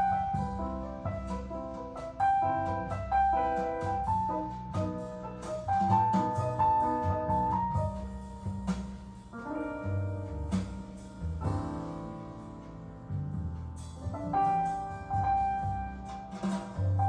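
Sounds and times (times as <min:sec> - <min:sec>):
bass line: 0:00.0 - 0:17.0
piano melody: 0:00.0 - 0:17.0.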